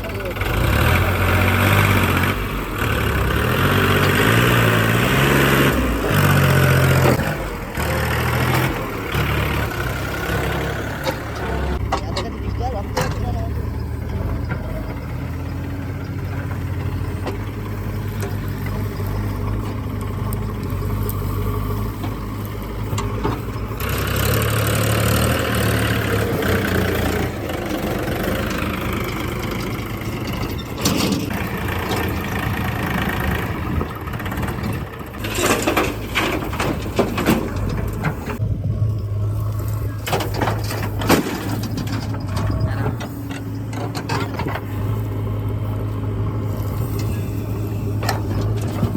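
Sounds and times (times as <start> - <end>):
diesel engine running: 0.0 - 48.9
sharp knocks and clanks: 6.2 - 15.2, 22.8 - 32.3, 34.2 - 38.4, 40.0 - 44.7.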